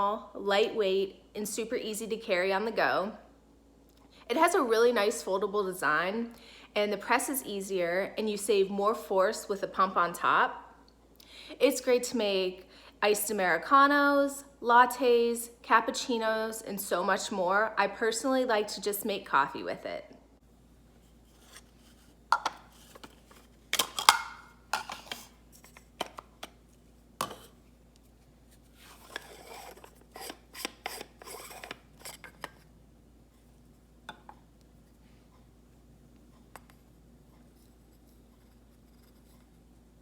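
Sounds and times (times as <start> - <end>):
plastic parts clicking and knocking: 22.3 - 26.5.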